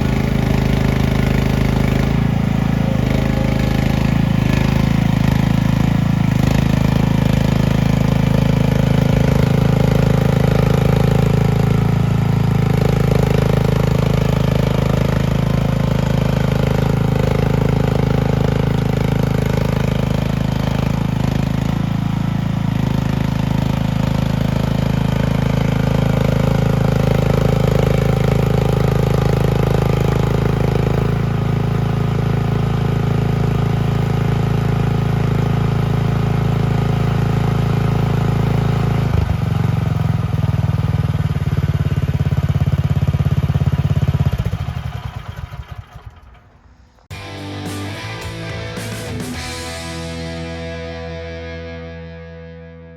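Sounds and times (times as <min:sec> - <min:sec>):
skid steer engine running: 0:00.0 - 0:52.9
higher rising and falling note: 0:47.1 - 0:52.9.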